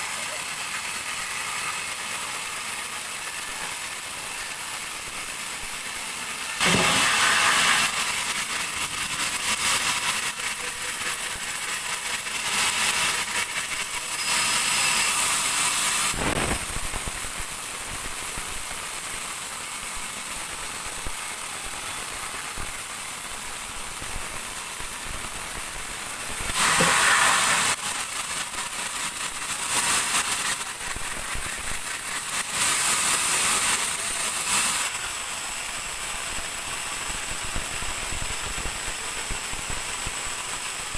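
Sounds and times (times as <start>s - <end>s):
bandsaw cutting through log: 0.0s - 16.8s, 26.4s - 38.0s.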